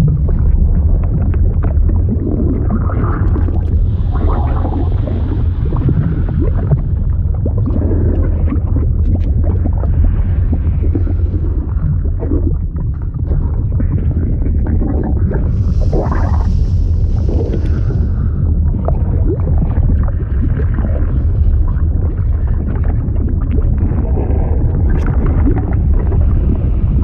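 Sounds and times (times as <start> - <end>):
bubbling and gurgling: 0.0 - 27.0
deep rumble: 0.0 - 27.0.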